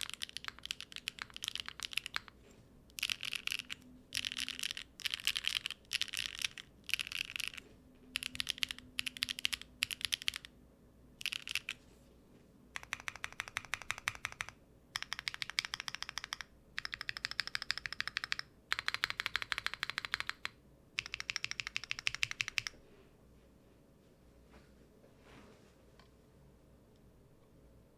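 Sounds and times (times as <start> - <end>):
mechanical keyboard typing: 0.0 - 10.5, 11.2 - 11.8, 12.8 - 22.8.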